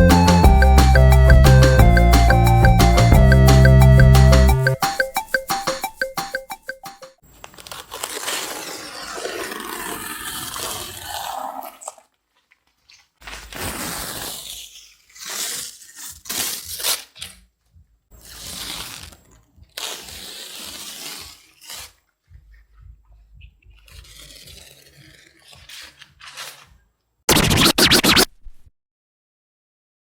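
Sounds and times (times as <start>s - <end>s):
masking tape tearing off wall: 7.5s - 11.2s, 12.7s - 17.5s, 18.2s - 22.1s, 23.8s - 28.7s.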